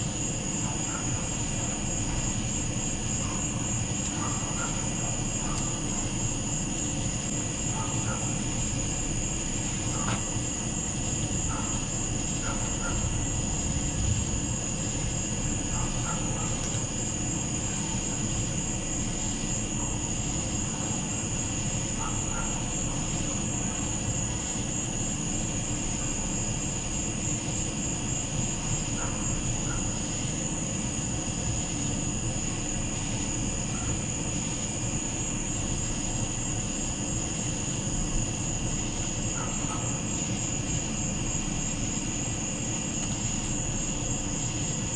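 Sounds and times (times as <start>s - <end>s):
crickets trilling: 0.0s - 44.9s
low steady rumble: 10.8s - 18.6s.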